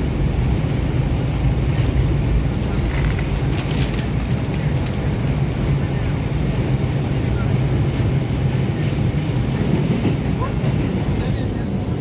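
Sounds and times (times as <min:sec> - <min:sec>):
subway train rumbling in tunnel: 0:00.0 - 0:12.0
wheels clicking over track: 0:01.5 - 0:05.8.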